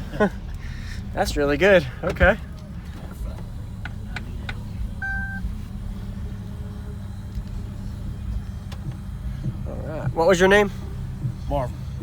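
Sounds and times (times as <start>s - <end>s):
low rumble of vehicles: 0.0s - 12.0s
short electronic beep: 5.0s - 5.4s.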